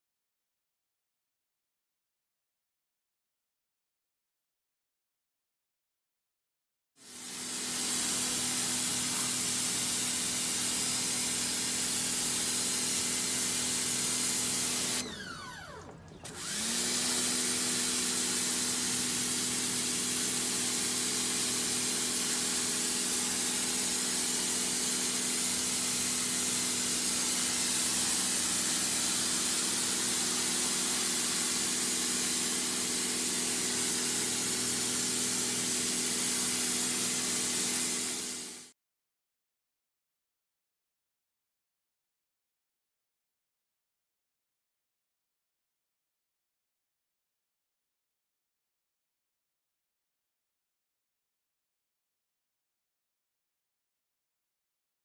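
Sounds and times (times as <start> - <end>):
pressure washer spraying: 7.0 - 38.7.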